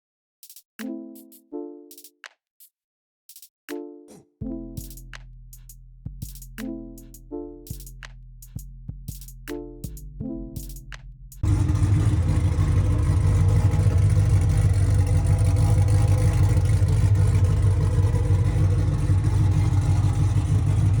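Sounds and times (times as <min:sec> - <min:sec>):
car engine running: 0:11.4 - 0:21.0.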